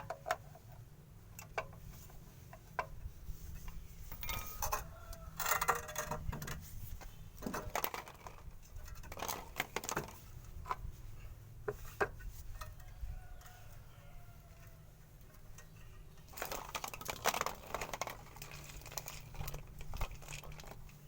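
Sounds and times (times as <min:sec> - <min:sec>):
small hard objects clicking: 0:07.4 - 0:10.2, 0:15.6 - 0:21.0.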